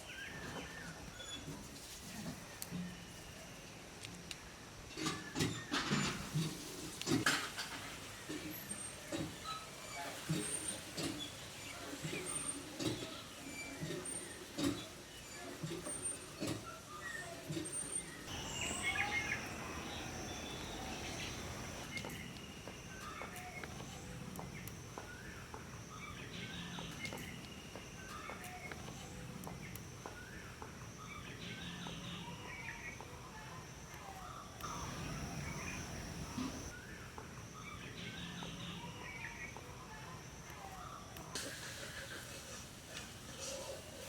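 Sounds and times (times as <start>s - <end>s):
birds calling: 8.5s - 39.8s.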